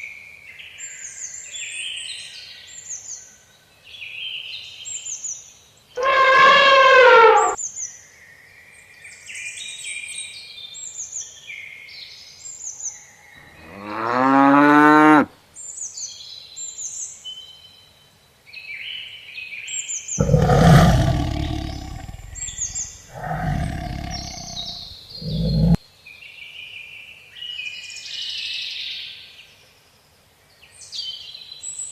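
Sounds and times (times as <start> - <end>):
animal calls: 6.0 - 7.6, 20.2 - 25.8
loud rough animal calls: 6.0 - 7.6, 20.2 - 25.8
high birdsong chirps: 20.2 - 25.8.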